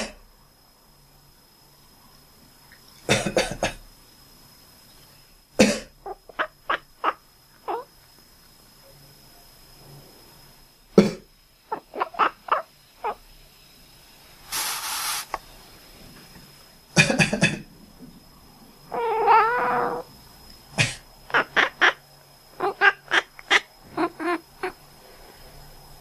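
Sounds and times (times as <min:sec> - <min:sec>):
person coughing: 0:03.1 - 0:03.8, 0:05.6 - 0:05.9, 0:17.0 - 0:17.6, 0:20.8 - 0:21.0
cat making quacking chirps: 0:06.1 - 0:07.9, 0:11.7 - 0:13.2, 0:18.9 - 0:20.0, 0:21.3 - 0:22.0, 0:22.6 - 0:24.8.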